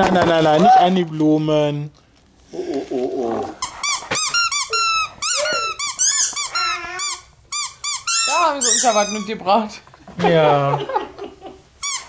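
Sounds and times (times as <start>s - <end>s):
squeaky toys squeaking: 3.6s - 9.4s, 11.8s - 12.0s
small child's voice: 5.4s - 5.8s.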